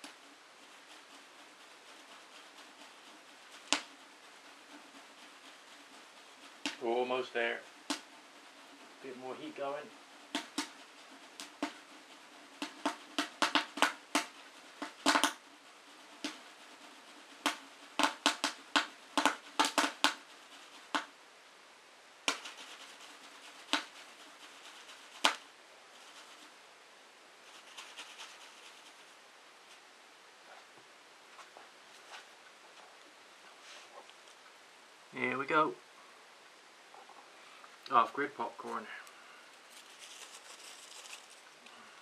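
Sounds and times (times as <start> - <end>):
popcorn kernels popping in a pot: 12.6 - 15.4, 17.4 - 20.2.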